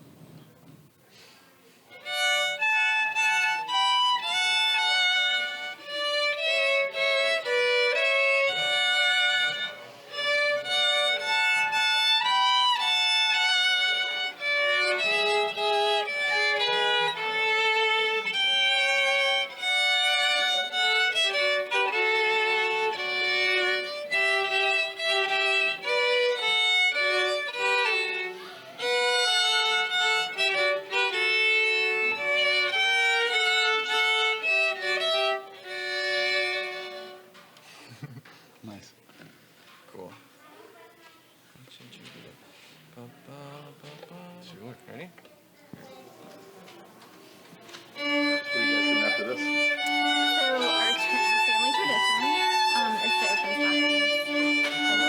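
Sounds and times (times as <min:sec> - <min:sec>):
solo violin slow melody: 0:01.9 - 0:37.4, 0:47.8 - 0:55.0.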